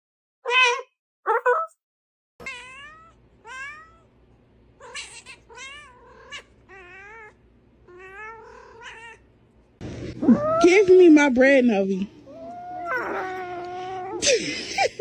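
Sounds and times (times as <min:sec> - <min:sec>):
cat meowing: 0:02.4 - 0:04.1, 0:04.8 - 0:09.3, 0:10.2 - 0:10.9, 0:12.2 - 0:14.2.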